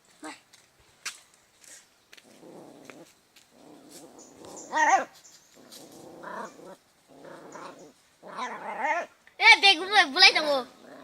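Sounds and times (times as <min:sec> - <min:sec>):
dog growling: 0:02.4 - 0:09.1, 0:10.7 - 0:11.0
dog yelping: 0:04.7 - 0:05.2.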